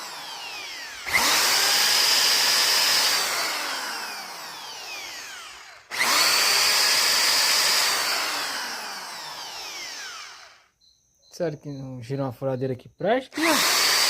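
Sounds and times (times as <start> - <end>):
electric drill whining: 0.0 - 10.7, 13.4 - 14.0.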